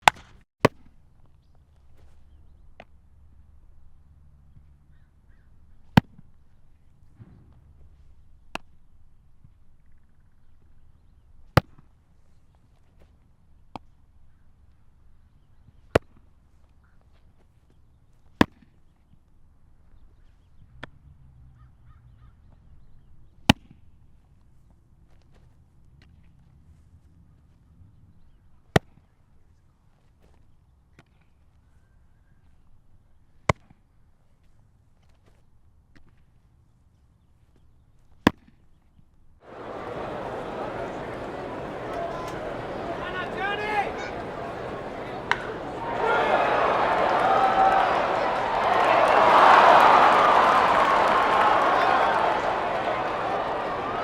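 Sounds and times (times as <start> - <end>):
baseball smacking into glove: 39.5 - 49.4
faint outdoor ambience: 39.5 - 54.0
baseball smacking into leather glove: 45.2 - 45.5.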